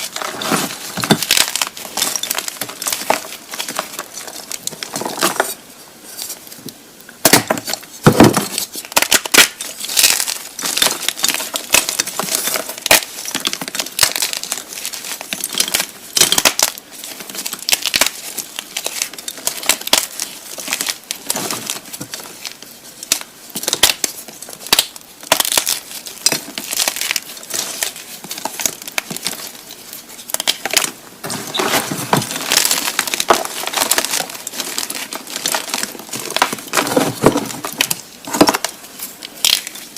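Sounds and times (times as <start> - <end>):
chalk blocks crunching: 0.0 - 6.5, 7.3 - 39.9.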